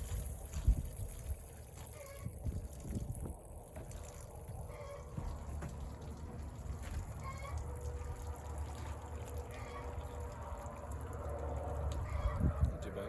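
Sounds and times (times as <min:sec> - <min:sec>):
water running: 0:00.0 - 0:12.5
faint chicken calls: 0:01.9 - 0:02.4, 0:04.5 - 0:05.5, 0:07.1 - 0:07.7, 0:09.4 - 0:10.3, 0:11.9 - 0:12.7.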